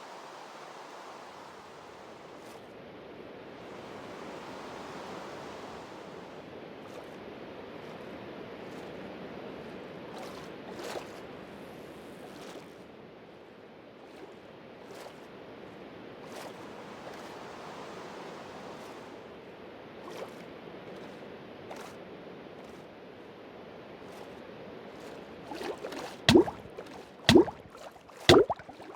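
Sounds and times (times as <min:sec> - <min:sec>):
steady rain hiss: 0:00.0 - 0:02.4.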